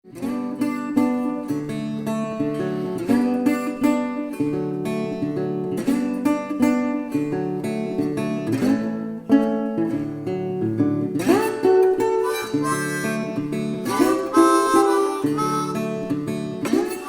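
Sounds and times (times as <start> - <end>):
strummed acoustic guitar: 0.1 - 17.0
harmonica: 11.3 - 17.0.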